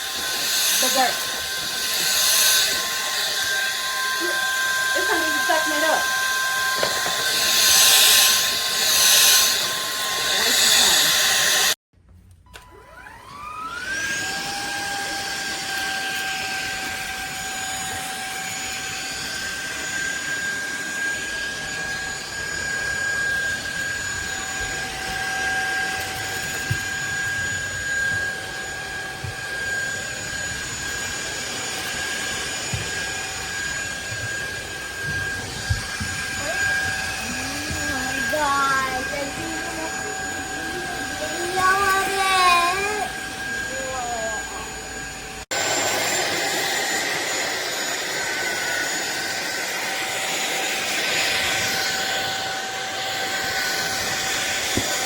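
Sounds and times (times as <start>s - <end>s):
suction air rushing: 0.0s - 11.8s
vacuum cleaner motor whine: 0.0s - 11.8s, 12.5s - 55.0s.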